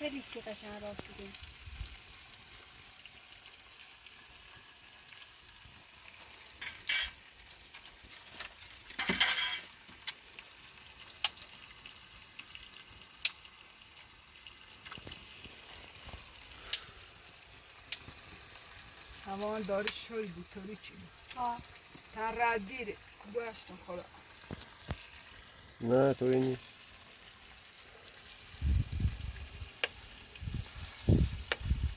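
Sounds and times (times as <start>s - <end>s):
food sizzling in a pan: 0.0s - 31.9s
utensil scraping a pan: 6.6s - 7.2s, 8.3s - 9.7s.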